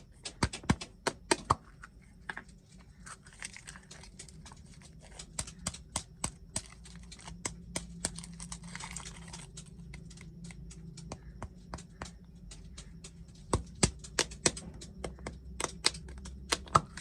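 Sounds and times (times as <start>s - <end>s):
sharp clicks and taps: 0.0s - 1.6s, 3.6s - 17.0s
plastic packaging crinkling: 2.4s - 10.9s
packaging rustling: 2.5s - 10.7s.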